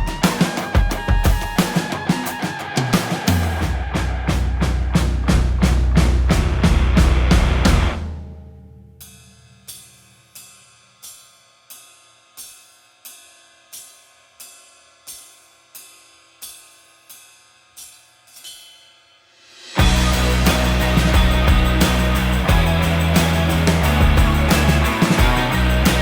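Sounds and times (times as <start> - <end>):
rock band music: 19.8 - 26.0.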